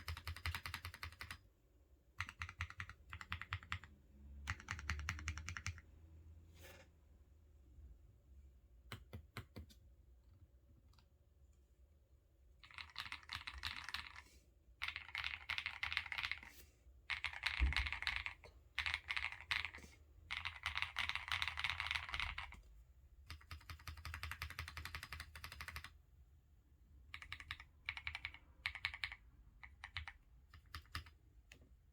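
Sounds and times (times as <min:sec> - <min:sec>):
mechanical keyboard typing: 0:00.0 - 0:01.4, 0:02.2 - 0:05.8, 0:12.6 - 0:14.2, 0:14.8 - 0:16.5, 0:17.1 - 0:22.6, 0:23.3 - 0:26.0, 0:27.1 - 0:31.2.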